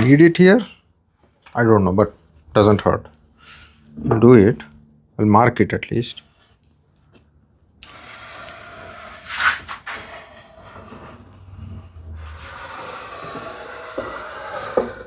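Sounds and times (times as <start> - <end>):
pencil scratching on wood: 12.3 - 15.0.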